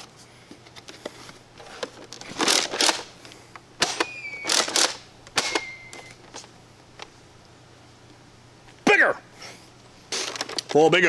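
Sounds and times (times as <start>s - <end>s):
plastic toy blaster clattering: 2.1s - 3.1s, 3.8s - 6.4s
high whistling tones: 4.0s - 4.7s, 5.4s - 6.2s.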